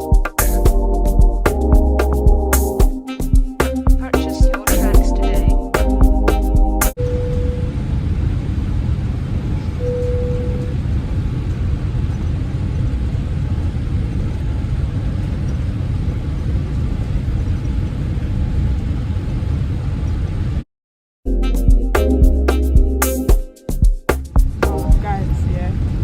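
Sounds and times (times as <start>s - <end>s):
brief steady tone: 7.0s - 7.8s, 9.8s - 10.8s.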